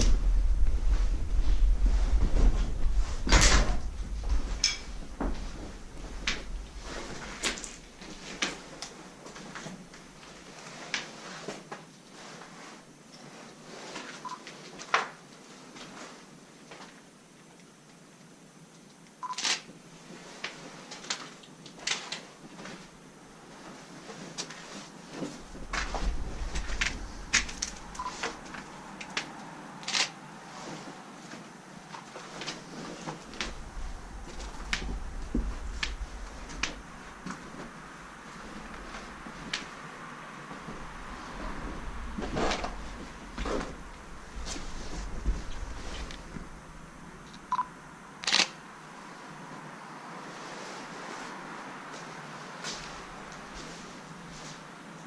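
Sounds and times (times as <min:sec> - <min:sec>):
low rumble: 0:00.0 - 0:08.2, 0:25.3 - 0:30.4, 0:33.0 - 0:48.1.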